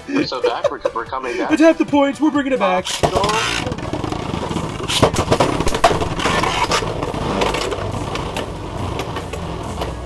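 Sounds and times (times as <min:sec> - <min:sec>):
spinning tops clashing: 0:02.8 - 0:10.0
spinning tops whirring in plastic arena: 0:02.8 - 0:10.0.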